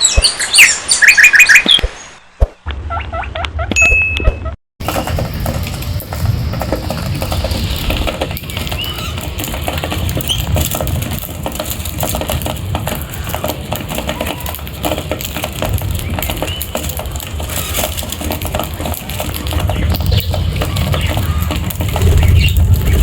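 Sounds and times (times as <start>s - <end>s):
short high bird chirps: 0.0s - 2.4s
birds pecking and scrabbling: 4.8s - 23.0s
low rumble: 4.8s - 23.0s.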